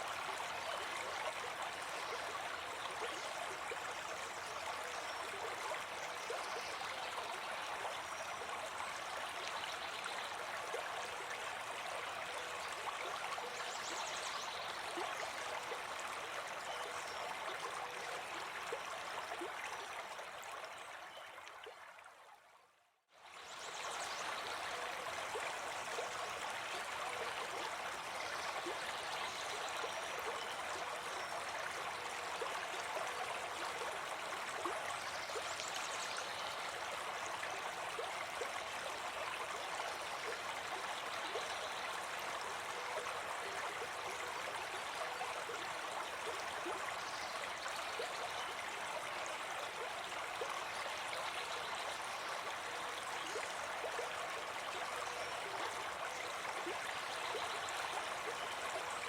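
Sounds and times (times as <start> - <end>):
brook babbling: 0.0 - 59.0.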